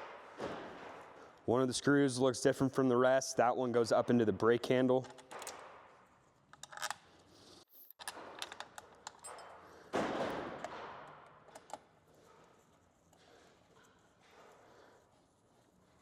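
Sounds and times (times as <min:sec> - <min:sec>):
small parts clicking and rattling: 0:06.5 - 0:09.9.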